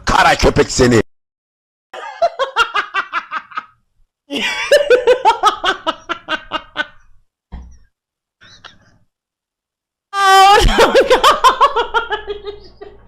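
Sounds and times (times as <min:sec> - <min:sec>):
person laughing hard: 0:02.0 - 0:07.1, 0:08.4 - 0:09.0, 0:10.3 - 0:13.0.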